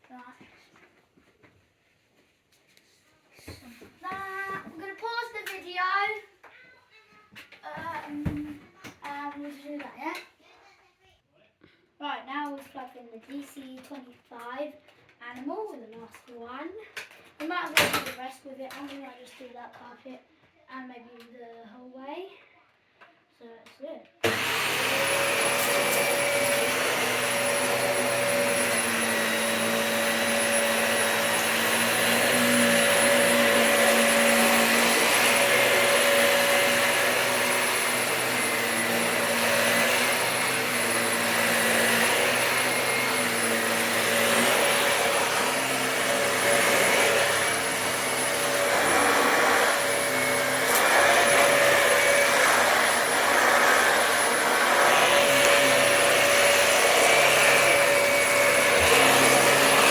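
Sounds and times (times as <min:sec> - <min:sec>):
vacuum cleaner on carpet: 0:24.2 - 0:59.9.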